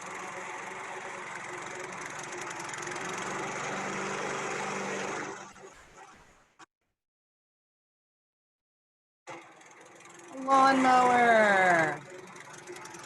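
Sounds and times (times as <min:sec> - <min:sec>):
lawn mower engine running: 0:00.0 - 0:06.1, 0:09.3 - 0:13.0.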